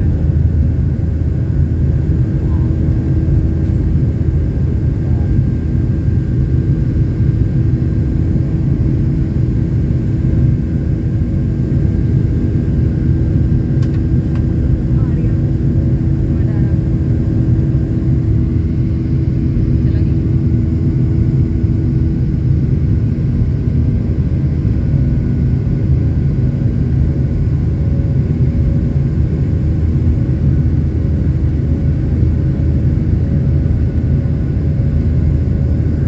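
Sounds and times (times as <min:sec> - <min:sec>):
airliner engines droning: 0:00.0 - 0:36.0.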